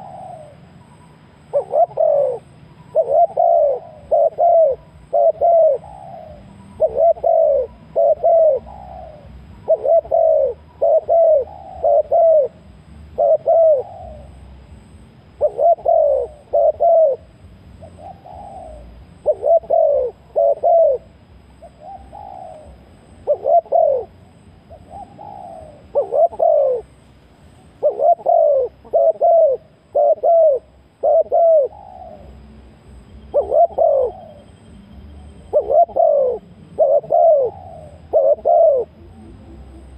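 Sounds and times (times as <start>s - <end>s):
dove cooing: 0.0s - 27.0s, 27.6s - 39.9s.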